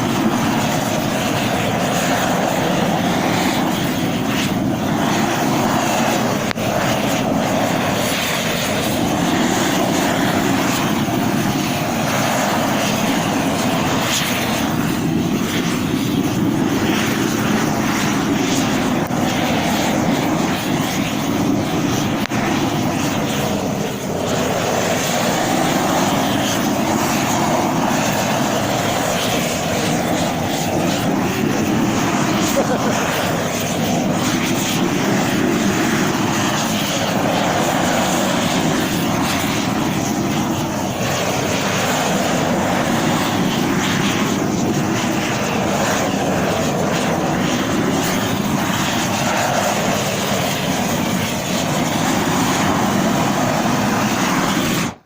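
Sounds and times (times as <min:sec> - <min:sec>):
roofing torch flame rushing: 0:00.0 - 0:55.0.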